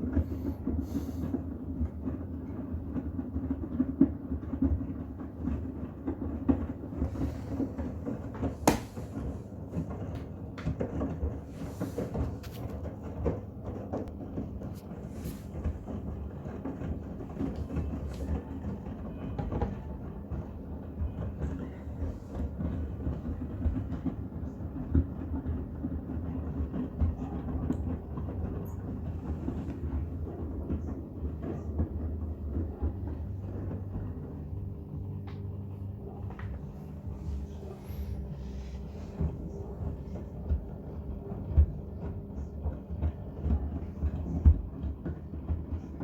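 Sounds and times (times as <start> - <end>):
washing machine hum and drum rumble: 0.0 - 46.0
soft knocks: 8.5 - 9.3.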